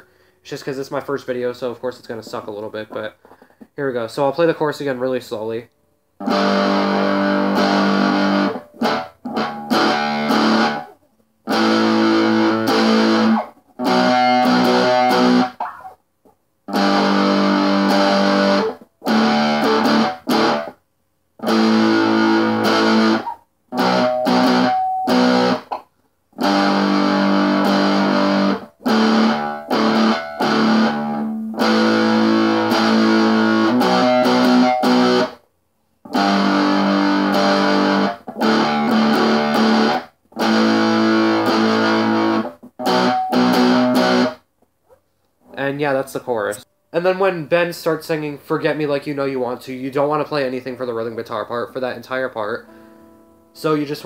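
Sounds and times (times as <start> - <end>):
electric guitar chords: 6.2 - 15.9, 16.7 - 20.8, 21.4 - 25.8, 26.4 - 35.4, 36.0 - 44.4, 52.5 - 54.0.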